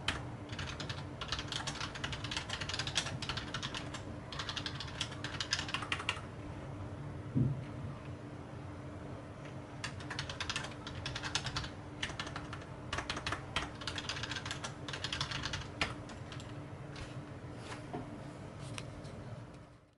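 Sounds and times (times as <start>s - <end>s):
keyboard typing: 0.0s - 6.2s, 9.8s - 16.6s.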